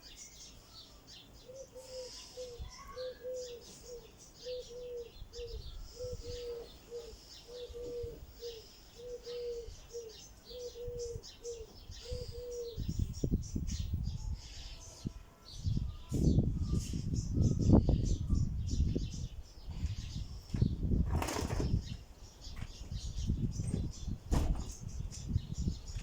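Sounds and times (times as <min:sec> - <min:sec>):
small birds chirping: 0:00.0 - 0:26.0
dove cooing: 0:01.5 - 0:12.9.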